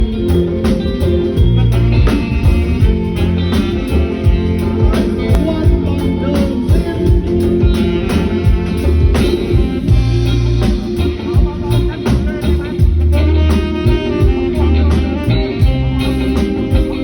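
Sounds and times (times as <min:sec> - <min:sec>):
bass notes: 0:00.0 - 0:17.0
guitar: 0:00.0 - 0:17.0
drum hits: 0:01.4 - 0:06.0.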